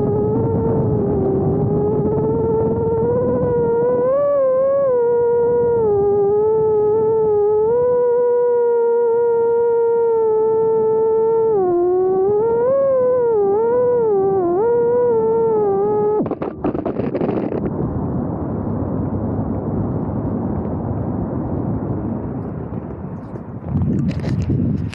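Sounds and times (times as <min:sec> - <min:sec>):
drone motors whining: 0:00.0 - 0:17.7
rushing wind noise: 0:00.0 - 0:24.9.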